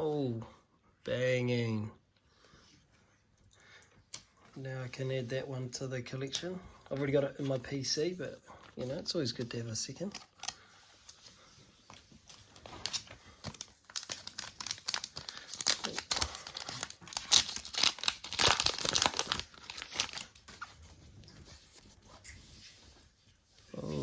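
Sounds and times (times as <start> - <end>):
foil wrapper tearing and crinkling: 12.3 - 20.4.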